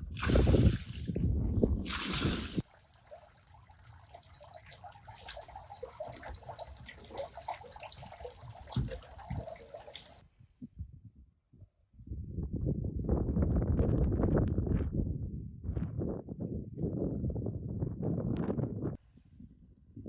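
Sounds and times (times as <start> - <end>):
water sloshing: 0.0 - 1.2, 1.8 - 10.2
water dripping and trickling: 1.8 - 10.2.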